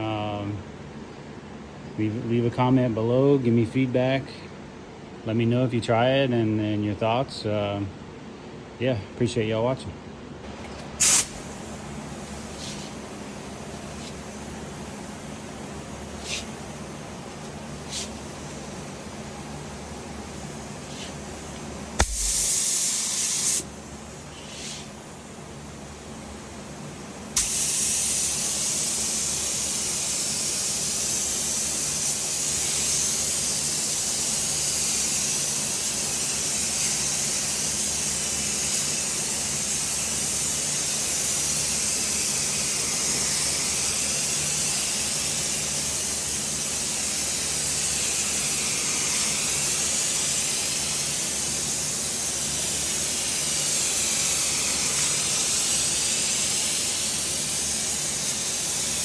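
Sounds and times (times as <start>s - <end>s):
spray gun hissing: 10.7s - 25.4s, 27.3s - 59.0s.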